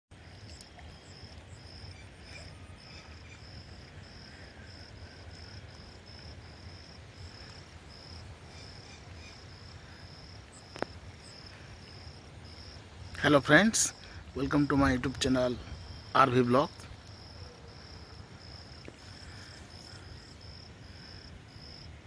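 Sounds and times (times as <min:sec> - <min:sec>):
insect chirping: 0:00.2 - 0:22.0.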